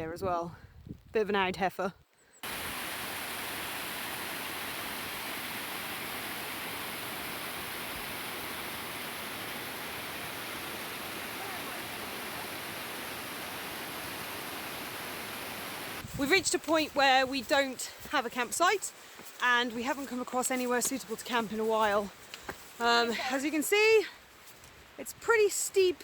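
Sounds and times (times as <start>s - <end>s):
fast-flowing water rushing: 2.4s - 19.3s.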